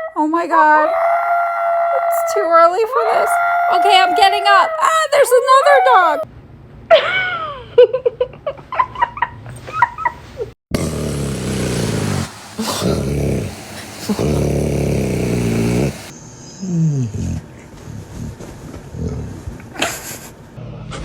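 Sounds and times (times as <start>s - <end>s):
dog growling: 10.7s - 19.5s.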